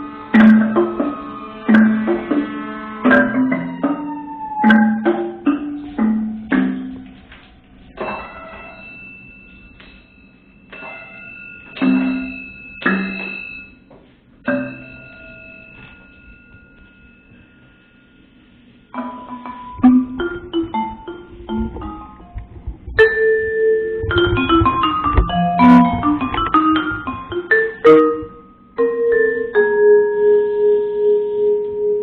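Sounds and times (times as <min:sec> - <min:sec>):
ringing metallic bell-like tones: 0:00.0 - 0:07.1, 0:07.9 - 0:22.4
percussion strikes: 0:00.0 - 0:29.9.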